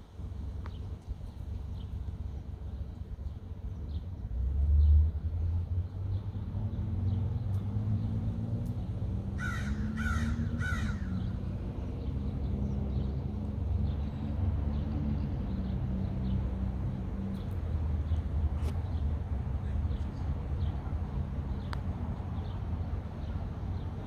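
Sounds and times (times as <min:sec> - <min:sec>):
harsh bird calls: 0:09.4 - 0:11.4.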